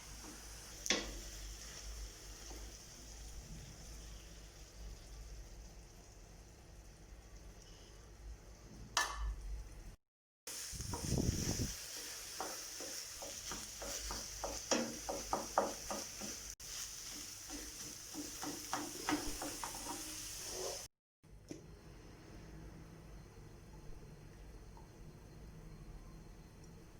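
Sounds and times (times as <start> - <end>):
food sizzling in a pan: 0.0 - 7.9, 10.5 - 20.9
utensil scraping a pan: 10.9 - 20.9.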